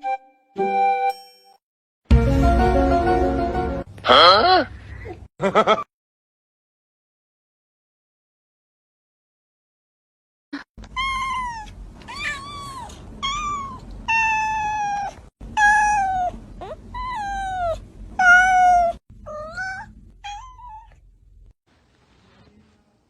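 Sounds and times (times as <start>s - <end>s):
cat meowing: 10.9s - 21.0s.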